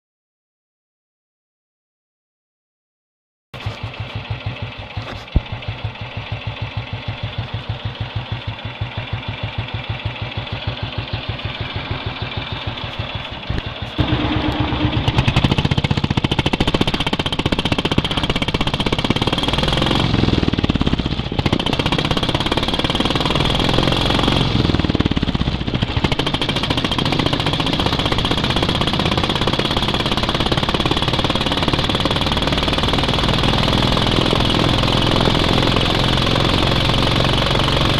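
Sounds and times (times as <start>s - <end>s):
motorcycle engine idling: 3.6s - 37.9s
motorcycle engine revving: 3.6s - 37.9s.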